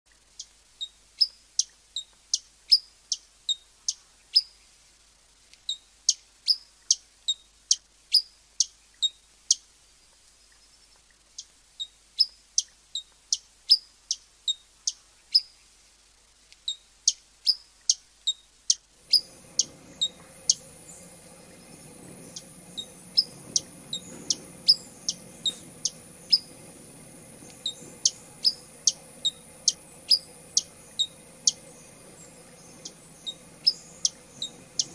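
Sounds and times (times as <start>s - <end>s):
faint background hiss and hum: 0.1s - 34.9s
hummingbird chip calls: 17.4s - 34.9s.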